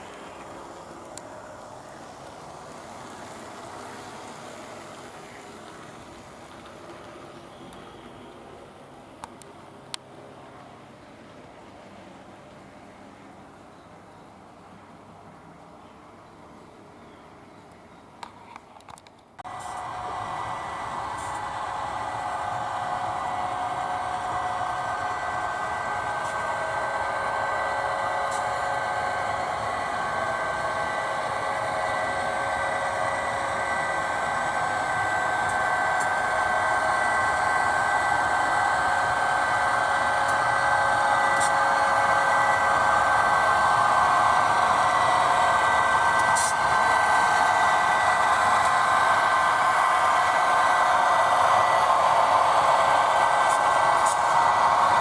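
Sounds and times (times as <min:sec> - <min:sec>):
faint ticks over track: 0:00.0 - 0:01.4, 0:04.8 - 0:08.2, 0:09.2 - 0:10.8
model train motor whir: 0:00.0 - 0:07.2, 0:19.5 - 0:55.0.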